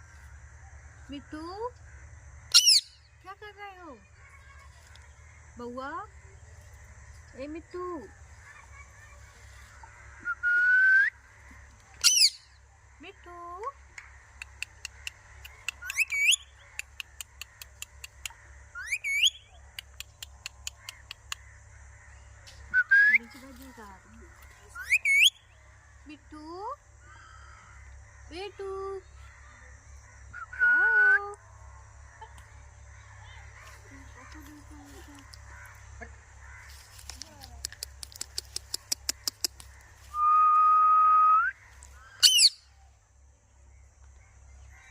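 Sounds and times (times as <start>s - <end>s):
parrot squawking: 2.5s - 2.9s, 12.0s - 12.4s, 42.2s - 42.6s
quick sharp ticks: 13.9s - 16.2s, 16.8s - 18.4s, 37.0s - 39.8s
parrot clicking: 13.9s - 18.4s, 19.8s - 21.4s, 37.1s - 39.8s.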